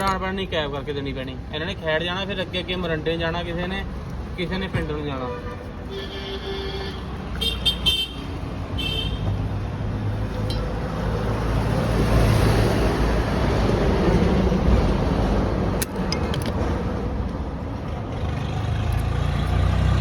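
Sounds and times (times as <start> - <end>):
vehicle horn toots: 5.5 - 9.2
motor vehicle passing by: 9.8 - 15.7, 17.7 - 20.0.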